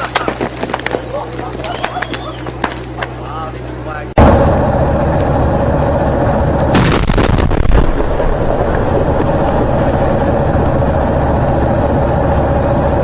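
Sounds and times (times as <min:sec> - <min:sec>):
loud steady rumble with hum: 0:00.0 - 0:13.0
explosion blast: 0:04.2 - 0:05.1, 0:06.6 - 0:10.3.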